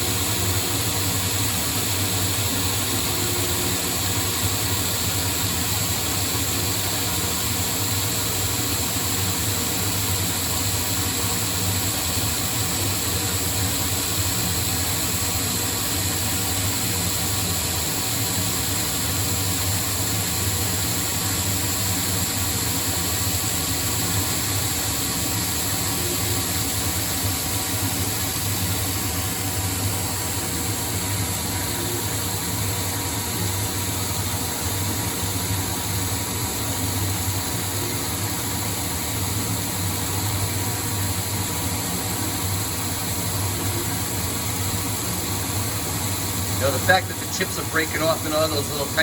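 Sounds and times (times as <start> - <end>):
lathe humming: 0.0 - 49.0
hiss of metal cutting: 46.1 - 49.0.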